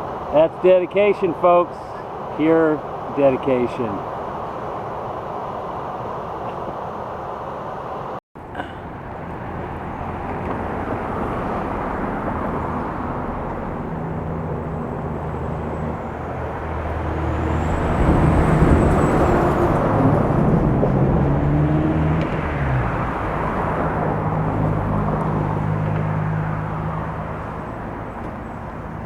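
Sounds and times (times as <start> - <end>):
steady rushing noise: 0.0 - 8.2
engine drone: 0.0 - 29.0.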